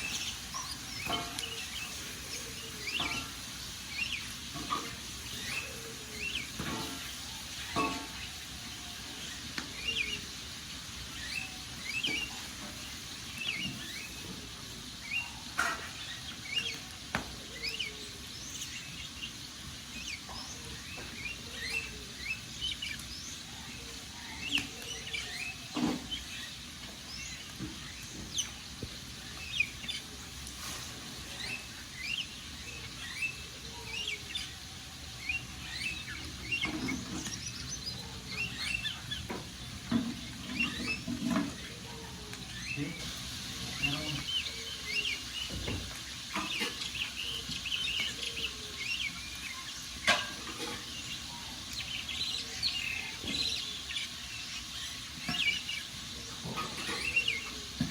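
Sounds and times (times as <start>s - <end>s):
small birds chirping: 0.0s - 57.9s
steady low hiss: 0.0s - 57.9s.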